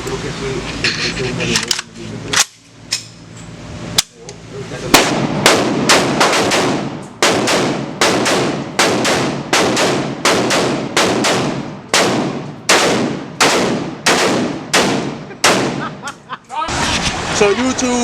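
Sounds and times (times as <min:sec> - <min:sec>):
gunshots with echoing tail: 0:04.9 - 0:16.0.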